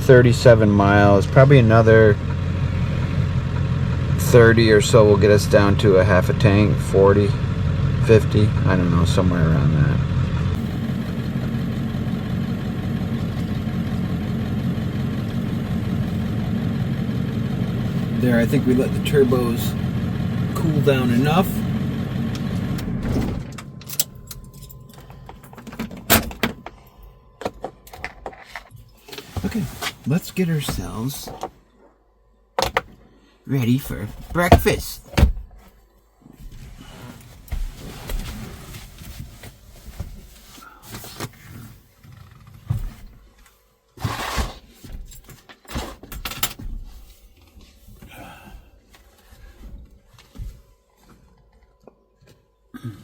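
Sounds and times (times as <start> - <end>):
diesel engine idling: 0.0 - 27.4.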